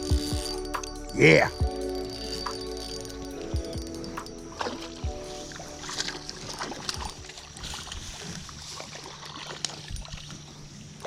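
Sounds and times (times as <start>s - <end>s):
background music: 0.0s - 8.2s
water splashing and rushing: 1.3s - 11.0s.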